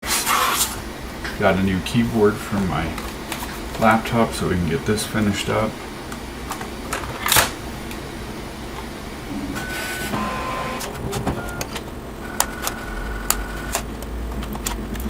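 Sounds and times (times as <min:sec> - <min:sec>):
steady low hum: 0:00.0 - 0:15.0
short high-pitched tones: 0:09.3 - 0:13.7.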